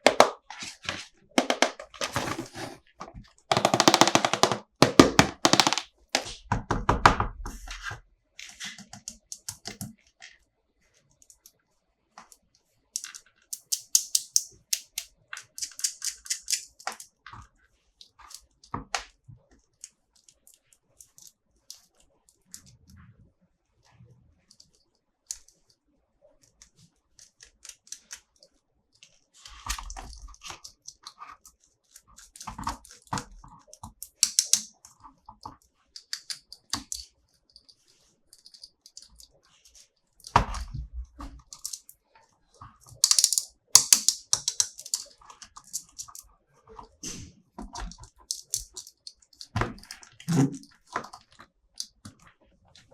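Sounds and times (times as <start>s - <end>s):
packaging rustling: 0.5s - 2.9s
plastic toys clicking: 3.5s - 6.3s, 13.0s - 17.2s, 29.8s - 40.4s, 41.4s - 42.0s, 42.8s - 46.3s, 47.8s - 52.2s.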